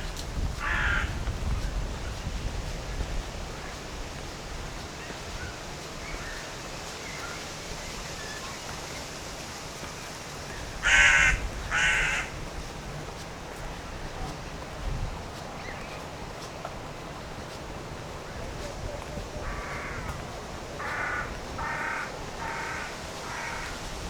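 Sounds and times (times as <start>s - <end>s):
outdoor background hiss: 0.0s - 24.0s
crow cawing: 0.6s - 1.1s, 10.8s - 12.3s, 19.4s - 20.1s, 20.8s - 23.8s.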